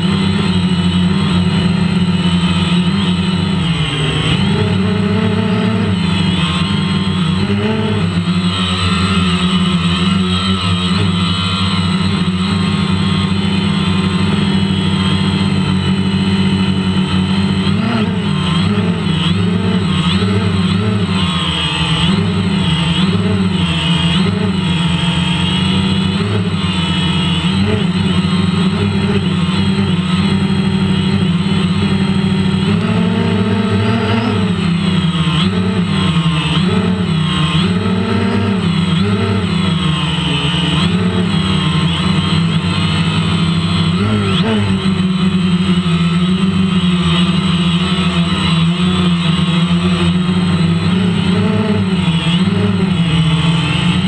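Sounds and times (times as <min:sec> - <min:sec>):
drone motors buzzing: 0:00.0 - 0:54.0.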